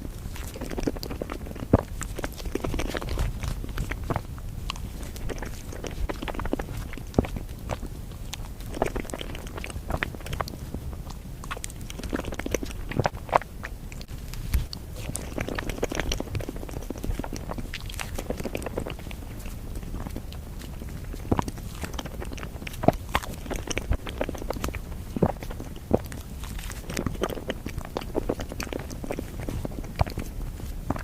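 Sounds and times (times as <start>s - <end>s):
chewing and biting: 0.0s - 31.0s
mouth clicks and smacks: 0.0s - 31.0s.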